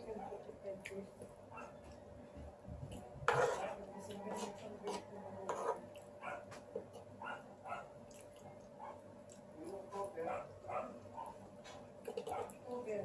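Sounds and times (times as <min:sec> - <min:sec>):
chewing and slurping spaghetti: 0:08.0 - 0:09.6, 0:11.2 - 0:12.7.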